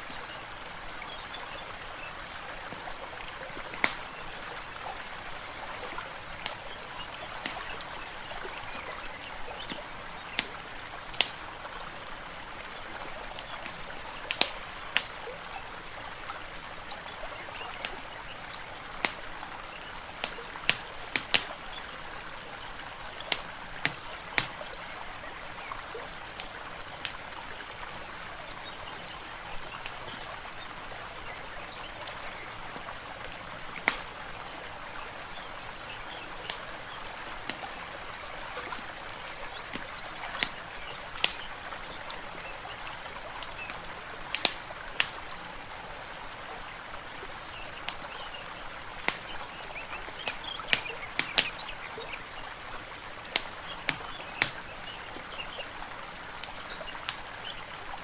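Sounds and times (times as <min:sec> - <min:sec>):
water trickling: 0:00.0 - 0:58.0
wood fire crackling: 0:36.0 - 0:41.5.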